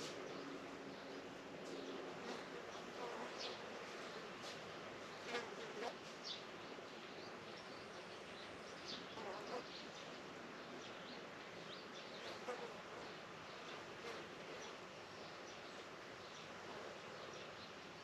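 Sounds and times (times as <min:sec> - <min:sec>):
insects buzzing: 0:00.0 - 0:04.4, 0:05.0 - 0:06.0, 0:09.1 - 0:09.8.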